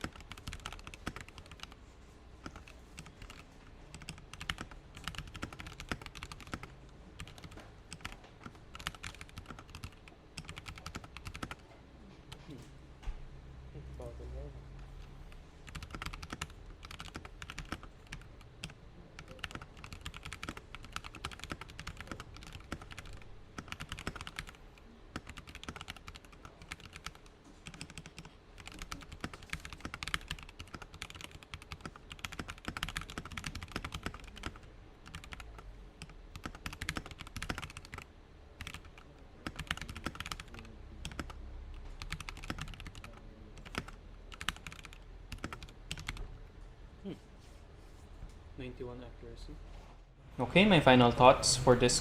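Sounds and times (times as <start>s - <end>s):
fast typing on mechanical keyboard: 0.0s - 1.8s, 2.4s - 11.6s, 15.6s - 46.3s.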